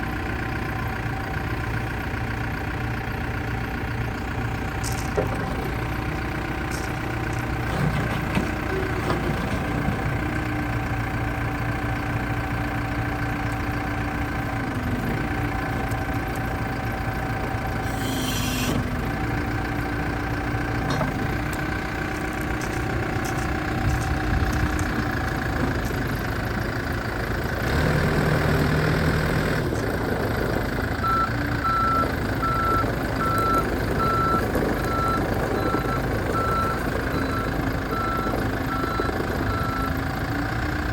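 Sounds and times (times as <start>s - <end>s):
backhoe loader engine running: 0.0s - 40.9s
brief hiss: 17.9s - 18.8s
reversing alarm beeping: 31.0s - 40.1s.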